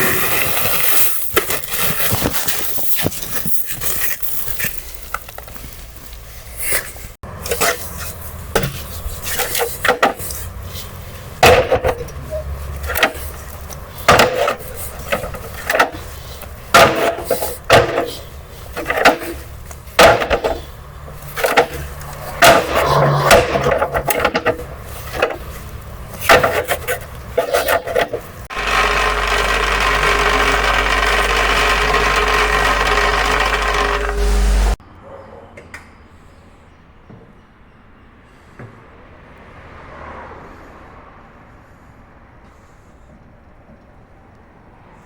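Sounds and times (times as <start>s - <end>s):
machinery knocking and clattering: 11.4s - 34.8s
machinery low hum: 28.5s - 34.8s.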